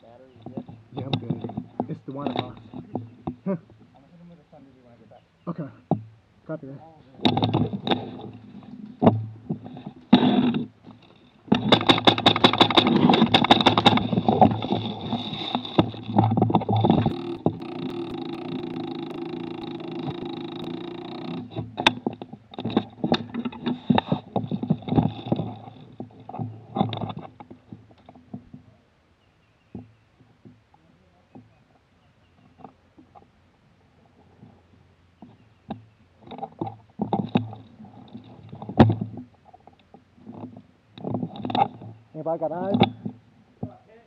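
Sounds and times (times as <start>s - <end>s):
humming rattle: 7.2s - 28.5s
clicks and knocks: 7.2s - 28.6s.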